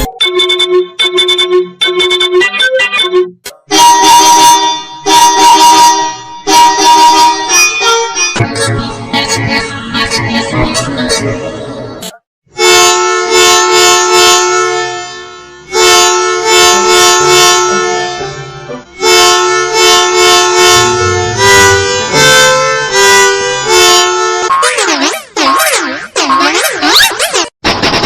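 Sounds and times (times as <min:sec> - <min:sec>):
musical bus horn: 0:00.2 - 0:09.4, 0:12.5 - 0:24.5.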